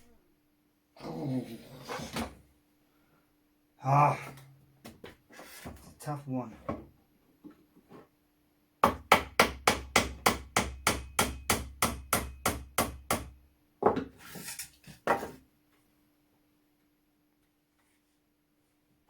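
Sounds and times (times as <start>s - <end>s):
small hammer tapping metal: 8.8s - 13.4s.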